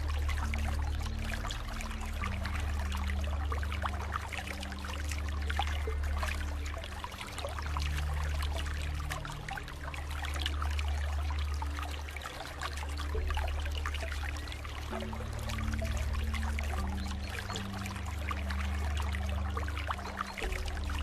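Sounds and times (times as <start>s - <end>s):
water trickling and splashing: 0.0s - 21.0s.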